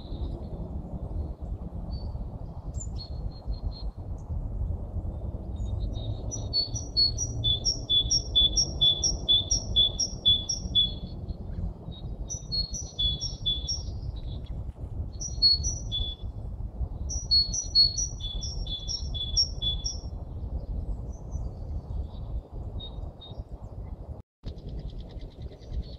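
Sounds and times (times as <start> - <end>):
steady low rumble: 0.0 - 25.9
songbird singing: 5.4 - 14.6, 15.2 - 16.3, 17.0 - 23.5.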